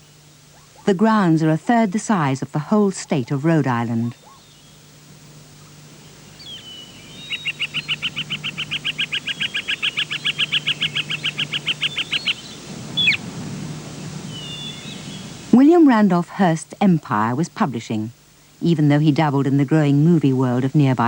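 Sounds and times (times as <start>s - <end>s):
songbird trilling: 0.4s - 4.9s, 6.0s - 13.2s, 14.3s - 15.4s
bird call and chirps: 4.0s - 4.8s, 6.2s - 13.2s, 14.3s - 15.3s.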